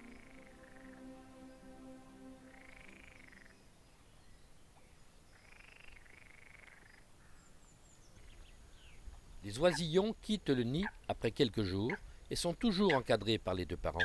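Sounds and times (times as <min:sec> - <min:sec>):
faint frog calls: 0:05.3 - 0:07.5.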